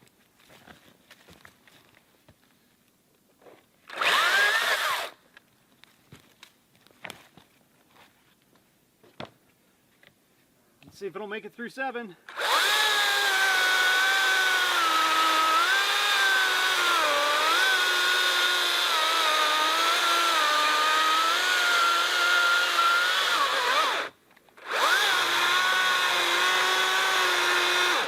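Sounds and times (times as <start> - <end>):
electric chainsaw cutting log: 3.9 - 5.2, 12.3 - 28.0
motor spinning up whine: 12.3 - 18.2, 23.0 - 28.0.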